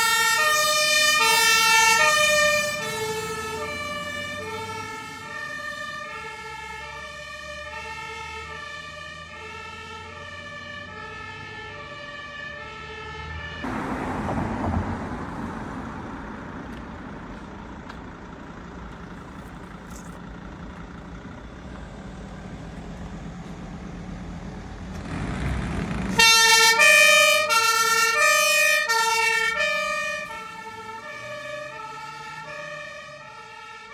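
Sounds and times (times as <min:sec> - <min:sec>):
two-tone siren: 0:00.0 - 0:14.7, 0:26.1 - 0:33.9
heavy vehicle driving past: 0:12.9 - 0:19.4, 0:20.2 - 0:26.7.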